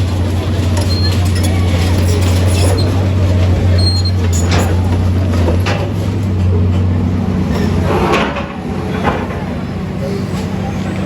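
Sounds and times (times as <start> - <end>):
large engine droning: 0.0 - 11.0.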